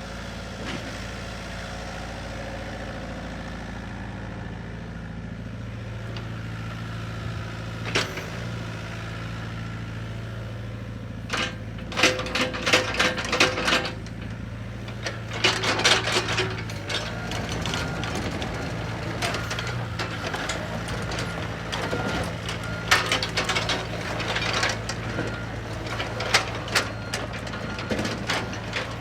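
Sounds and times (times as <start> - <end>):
diesel engine idling: 0.0 - 29.0
metallic clanks and rattles: 11.3 - 29.0.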